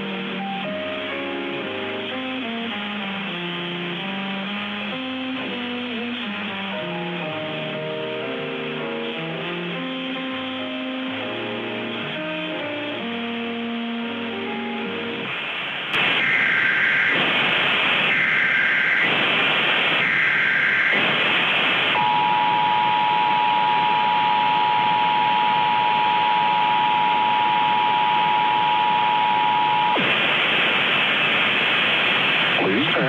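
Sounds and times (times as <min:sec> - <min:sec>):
static hiss: 0:00.0 - 0:33.0
warbling two-pitch data screech: 0:16.0 - 0:28.5
steady dual-tone attention signal: 0:16.0 - 0:30.0.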